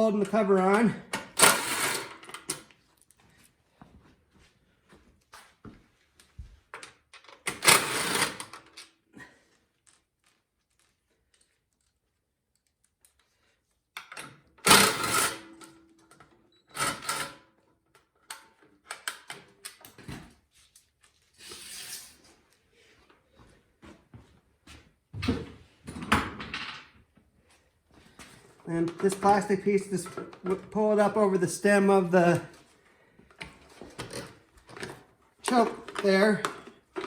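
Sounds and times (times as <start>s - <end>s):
metal parts clanking: 1.4s - 2.6s
hand tools clicking and clattering: 28.6s - 31.2s, 33.3s - 37.0s.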